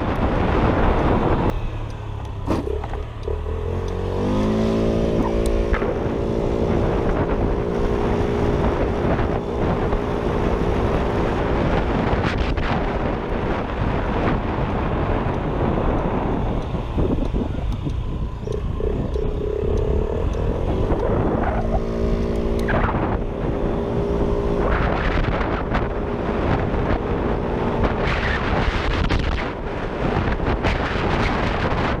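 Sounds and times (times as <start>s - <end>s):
wind noise on microphone: 0.0s - 32.0s
small engine running: 14.2s - 29.3s.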